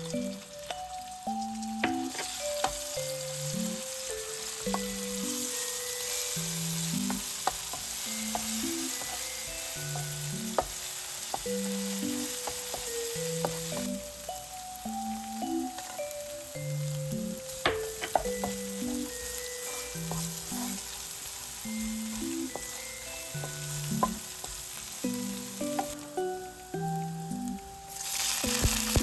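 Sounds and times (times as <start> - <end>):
food sizzling in a frying pan: 0.0 - 29.0
light background music: 0.0 - 29.0
utensil tapping and scraping pan: 1.7 - 3.0, 6.8 - 14.0, 17.5 - 19.1, 19.7 - 20.9, 21.8 - 26.0.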